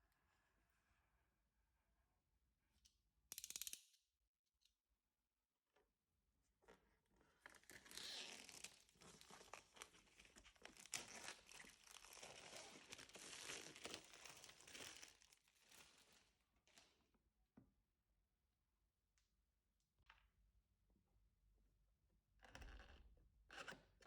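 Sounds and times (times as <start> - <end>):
packaging crinkling and rustling: 7.5 - 16.9.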